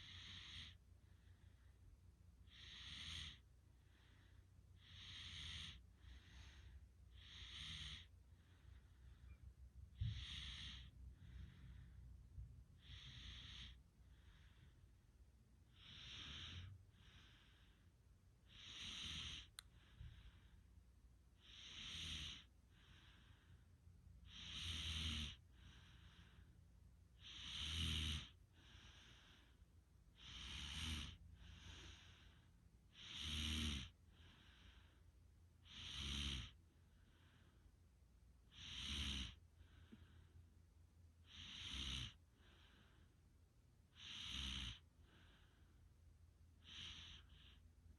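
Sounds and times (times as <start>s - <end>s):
person snoring: 2.5s - 3.4s, 4.8s - 8.1s, 10.0s - 11.7s, 12.8s - 14.5s, 18.5s - 19.6s, 21.4s - 23.3s, 24.3s - 26.4s, 27.2s - 29.5s, 30.2s - 34.6s, 35.7s - 36.6s, 38.5s - 39.4s, 41.3s - 42.2s, 44.0s - 44.8s.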